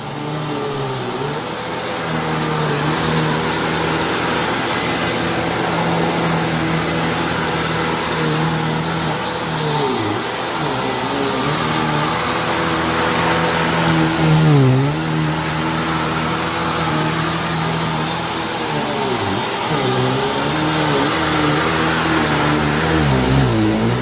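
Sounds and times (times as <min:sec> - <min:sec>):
vacuum cleaner running: 0:00.0 - 0:24.0.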